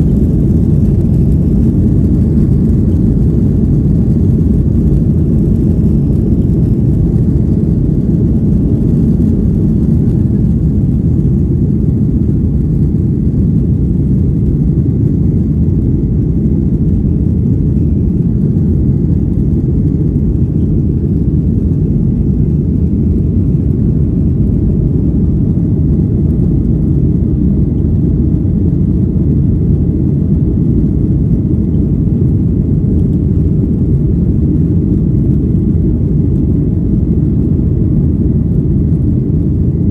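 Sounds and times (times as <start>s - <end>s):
airflow over fuselage: 0.0s - 39.9s
jet engines low rumble: 0.0s - 39.9s.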